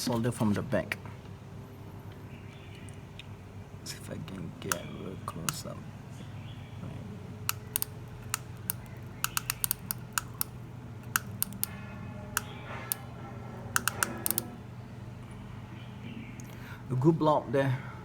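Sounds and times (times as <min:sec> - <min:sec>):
soldering gun clicks: 0:07.5 - 0:11.7, 0:12.4 - 0:13.0, 0:13.8 - 0:14.5.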